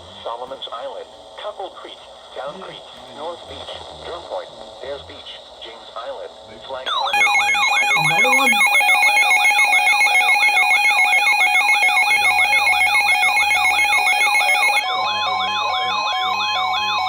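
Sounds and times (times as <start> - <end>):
siren-like alert wail: 6.9 - 17.0
steady alert tones: 6.9 - 17.0
two-pitch beeping: 6.9 - 17.0.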